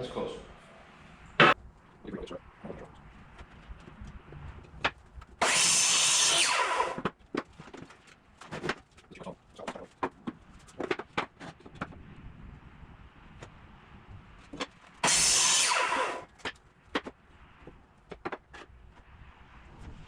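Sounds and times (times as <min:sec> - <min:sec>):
power saw cutting wood: 0:05.4 - 0:07.1, 0:15.0 - 0:16.3.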